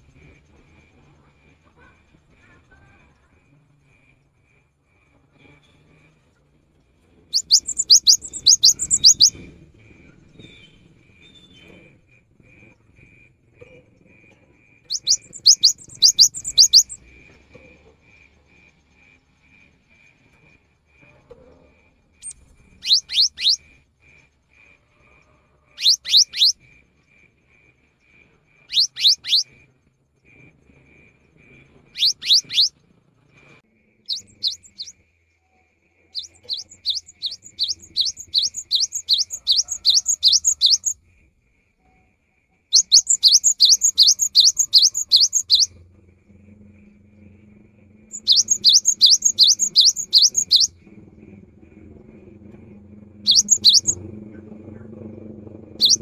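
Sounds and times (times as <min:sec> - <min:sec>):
rapid repeated bird notes: 0:07.2 - 0:56.0
bird singing whistles: 0:07.4 - 0:09.4, 0:14.9 - 0:17.0, 0:22.2 - 0:23.6, 0:25.8 - 0:26.6, 0:28.7 - 0:29.5, 0:32.0 - 0:32.7, 0:34.1 - 0:34.9, 0:36.2 - 0:41.0, 0:42.7 - 0:45.8, 0:48.1 - 0:50.7, 0:53.2 - 0:54.0, 0:55.8 - 0:56.0.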